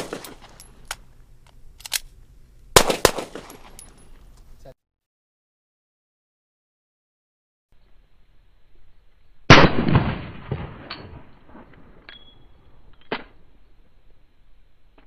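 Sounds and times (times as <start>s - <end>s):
handgun shot: 2.8s - 3.6s.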